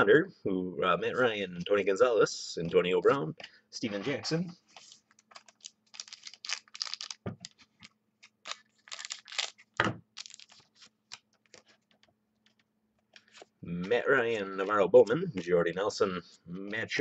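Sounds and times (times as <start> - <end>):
cards clicking and rustling: 4.8 - 14.8.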